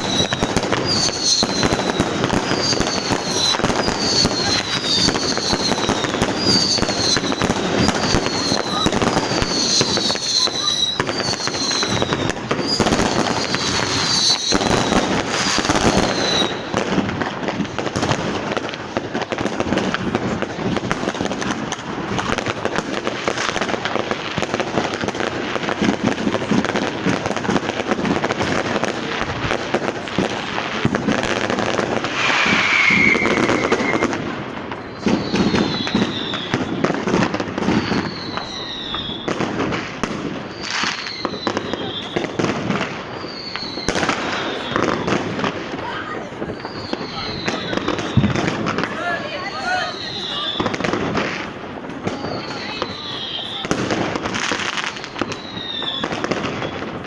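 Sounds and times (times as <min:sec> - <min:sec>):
firework whistles falling in pitch: 0:00.0 - 0:17.0, 0:31.2 - 0:57.0
firecrackers crackling and banging: 0:00.0 - 0:57.0.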